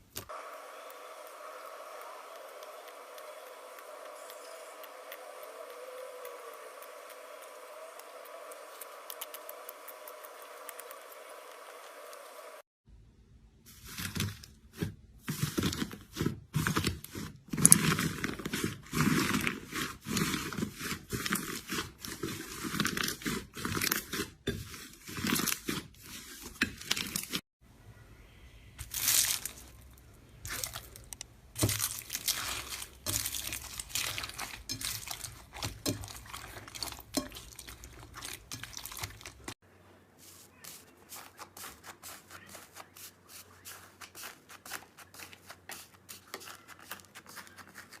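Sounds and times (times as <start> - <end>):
slime squeezed crackling and popping: 30.5 - 39.5.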